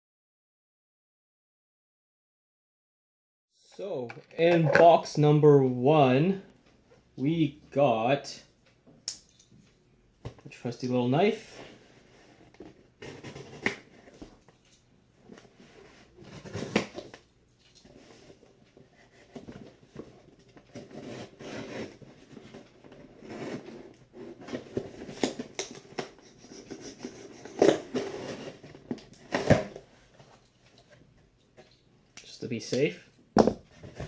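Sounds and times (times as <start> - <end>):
tape and cardboard rustling: 11.6 - 31.8, 33.6 - 34.0
knife cutting cardboard box: 13.0 - 14.1, 20.7 - 28.7.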